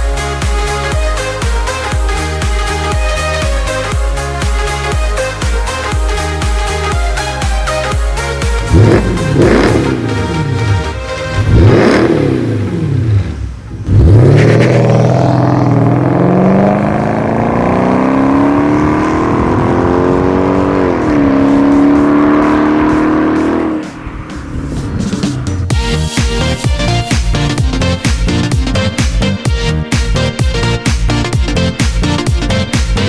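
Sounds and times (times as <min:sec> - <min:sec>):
car engine revving: 0:08.6 - 0:25.8.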